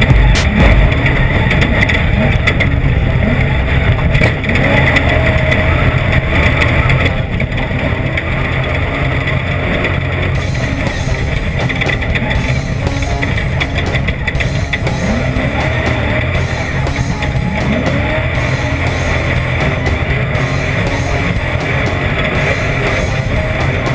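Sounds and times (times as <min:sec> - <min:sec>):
off-road race engines: 0:00.0 - 0:23.9.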